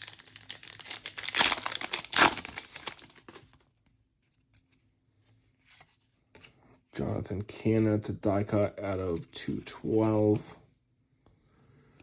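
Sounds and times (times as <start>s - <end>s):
foil wrapper crinkling and tearing: 0.0s - 3.6s.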